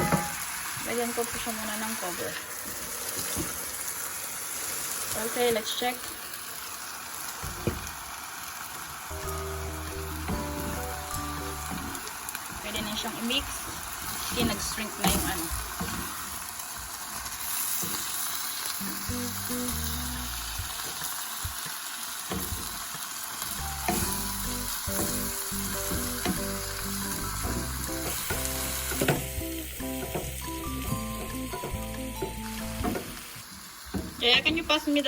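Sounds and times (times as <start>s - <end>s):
food sizzling in a frying pan: 0.0s - 35.0s
background music with stepping notes: 9.1s - 12.2s, 23.6s - 33.2s.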